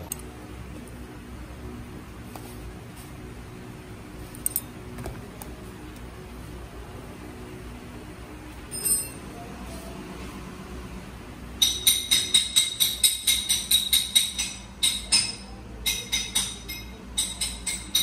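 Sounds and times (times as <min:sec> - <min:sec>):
metallic clink: 0:08.7 - 0:09.2
hammer striking metal: 0:11.6 - 0:18.0.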